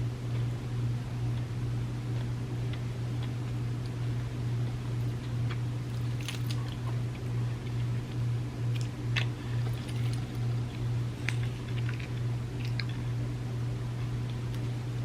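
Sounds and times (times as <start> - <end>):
pulsing low hum: 0.0 - 15.0
close chewing with mouth clicks: 1.2 - 13.2.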